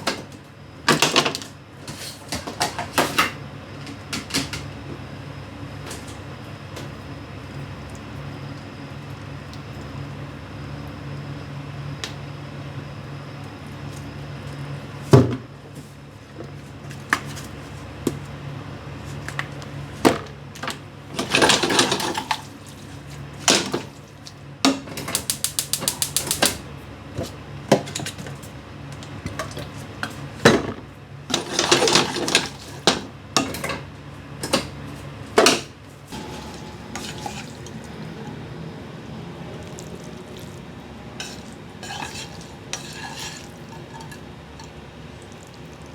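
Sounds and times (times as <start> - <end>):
cookware and utensils clattering: 21.2 - 22.5, 30.4 - 34.7, 35.4 - 38.3, 41.2 - 44.8
steady low hum: 32.7 - 45.9.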